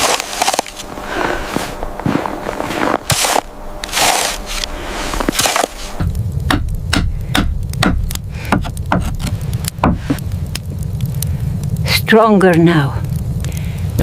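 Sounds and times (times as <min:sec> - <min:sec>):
noisy rustle: 0:00.0 - 0:06.4
low steady rumble: 0:00.0 - 0:14.0
sharp knocks: 0:05.3 - 0:10.2.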